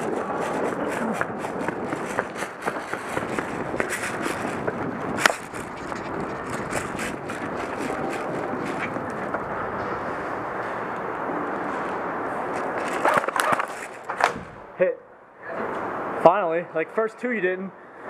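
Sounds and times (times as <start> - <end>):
gear scuffing and clattering: 0.5 - 10.0.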